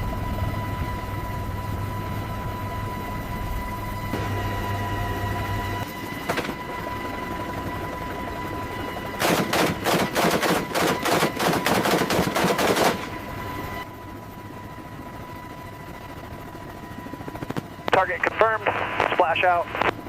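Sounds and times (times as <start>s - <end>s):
engine hum with whine: 0.0s - 20.0s
automatic gunfire: 9.2s - 13.1s.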